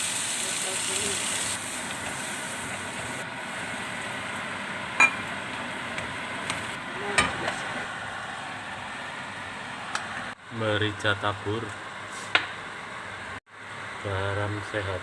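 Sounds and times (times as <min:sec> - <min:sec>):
vegetables sizzling in a pan: 0:00.0 - 0:10.3.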